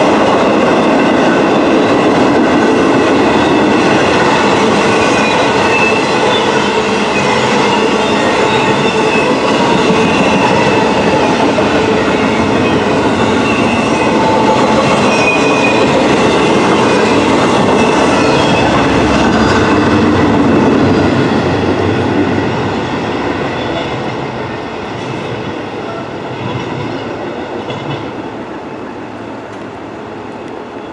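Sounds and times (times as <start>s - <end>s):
train wheels clacking on rails: 0.0s - 28.4s
high wheel squeal: 3.5s - 20.0s.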